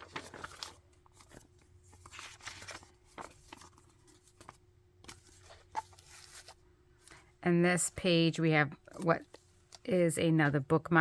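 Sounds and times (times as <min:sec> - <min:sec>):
paper pages rustling: 0:00.0 - 0:07.3.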